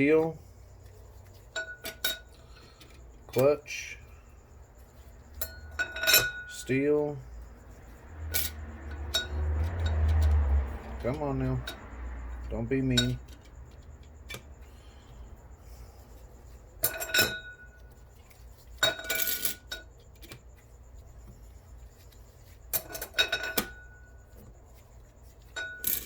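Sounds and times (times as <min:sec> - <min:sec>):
metal clutch plates clinking: 0:01.3 - 0:03.6, 0:04.9 - 0:07.0, 0:07.6 - 0:15.5, 0:16.5 - 0:20.4, 0:21.9 - 0:26.0.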